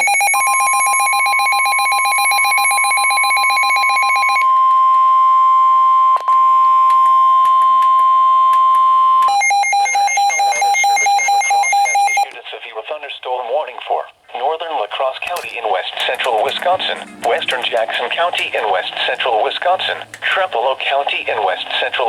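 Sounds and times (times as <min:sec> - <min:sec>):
steady alert tone: 0:16.5 - 0:18.3.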